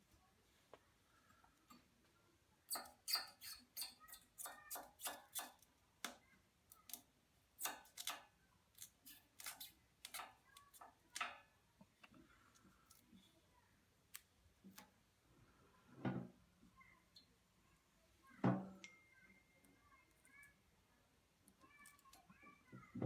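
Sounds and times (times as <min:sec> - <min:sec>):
hand tool clicks and snips: 0:07.6 - 0:08.2.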